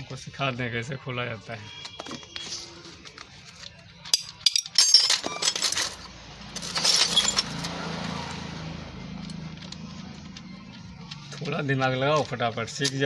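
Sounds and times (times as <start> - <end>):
metal tools clinking: 4.0 - 8.2, 12.1 - 13.0.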